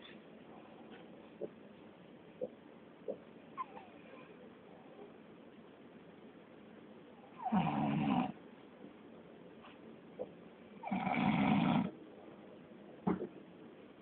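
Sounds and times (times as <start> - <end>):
man snoring: 10.8 - 11.9.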